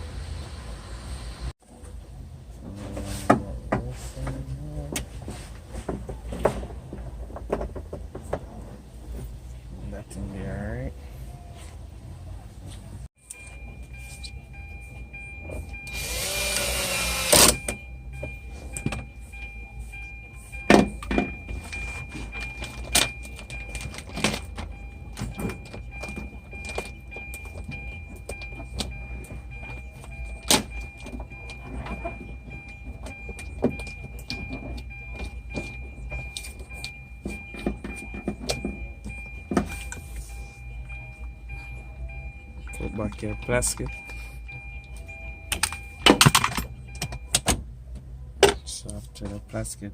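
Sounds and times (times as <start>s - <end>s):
power window motor running: 15.9s - 17.6s.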